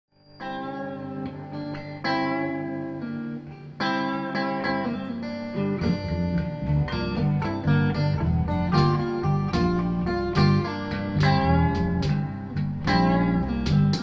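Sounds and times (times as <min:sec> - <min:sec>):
electric guitar ringing chords: 0:00.2 - 0:14.0
bass line: 0:05.5 - 0:14.0
drum rhythm: 0:05.7 - 0:14.0.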